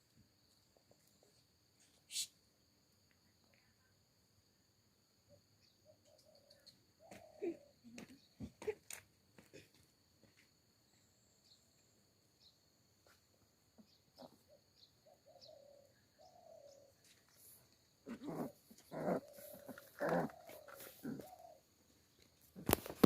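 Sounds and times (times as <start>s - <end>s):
puppy whining: 18.1s - 21.6s.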